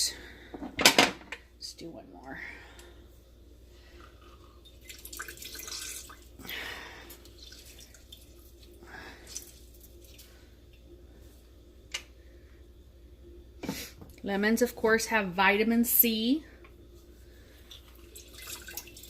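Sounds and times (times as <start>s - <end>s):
juice dripping into a jar: 4.0s - 10.9s, 17.6s - 19.0s.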